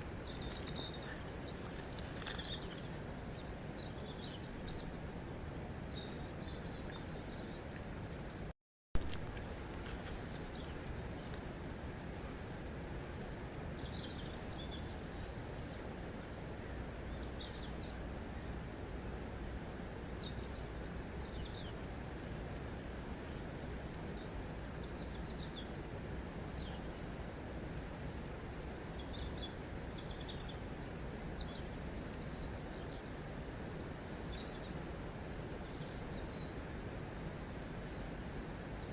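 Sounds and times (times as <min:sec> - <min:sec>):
small birds chirping: 0:00.0 - 0:08.4.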